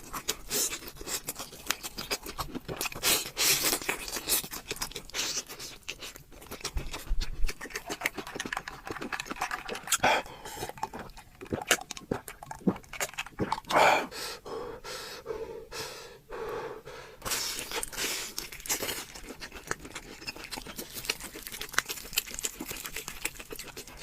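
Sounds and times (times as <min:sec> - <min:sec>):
chewing crunches and clicks: 0:00.0 - 0:13.8, 0:17.2 - 0:24.0
heavy breaths through mouth: 0:13.7 - 0:17.7.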